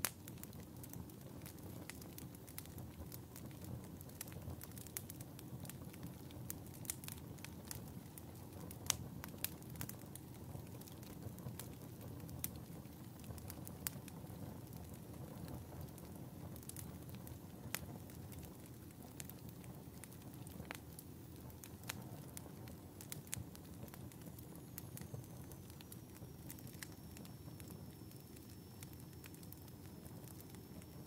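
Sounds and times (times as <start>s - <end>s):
fire crackling and popping: 0.0s - 31.0s
faint high whistle: 24.4s - 31.0s.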